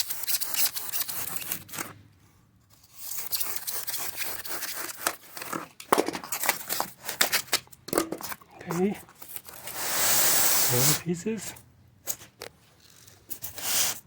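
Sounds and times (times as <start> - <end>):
paper cutting and crinkling: 0.0 - 2.0, 2.7 - 9.8.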